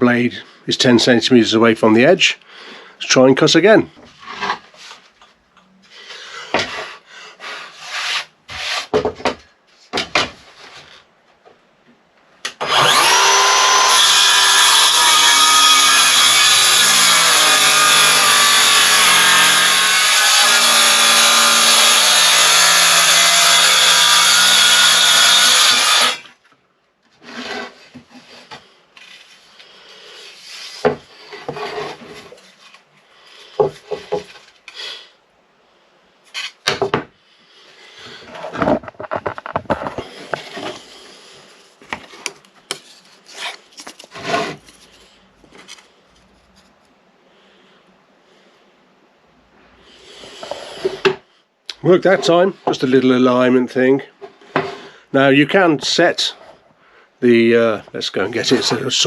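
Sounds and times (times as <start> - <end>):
circular saw cutting wood: 12.5 - 26.3, 30.3 - 32.4.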